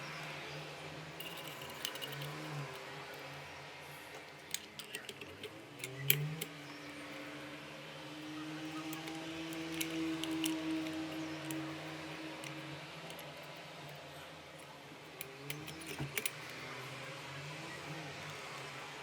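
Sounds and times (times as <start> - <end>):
light metallic clicks and taps: 8.2 - 16.8.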